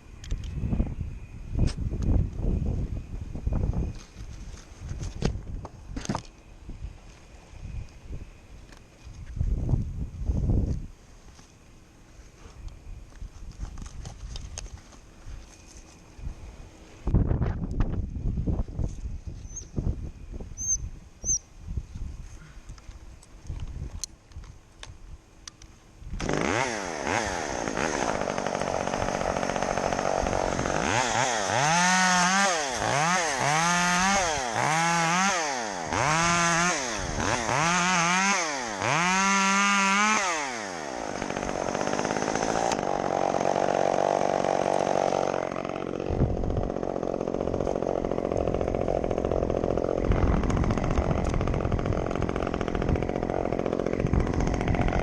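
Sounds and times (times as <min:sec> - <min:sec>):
chainsaw revving: 0:26.2 - 0:55.0.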